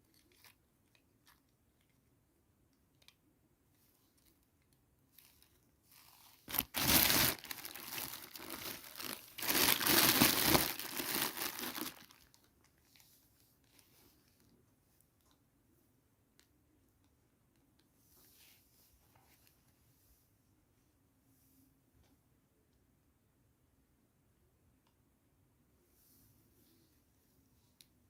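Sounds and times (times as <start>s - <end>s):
packaging crinkling and tearing: 5.2s - 13.0s.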